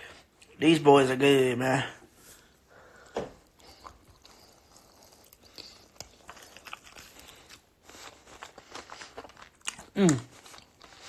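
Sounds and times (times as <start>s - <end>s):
man chewing food: 2.2s - 11.0s.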